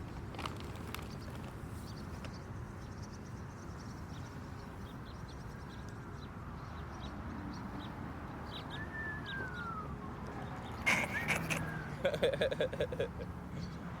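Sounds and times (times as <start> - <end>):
low background noise: 0.0 - 14.0
birds chirping: 0.8 - 14.0
falling whistle-like bird note: 8.7 - 10.0.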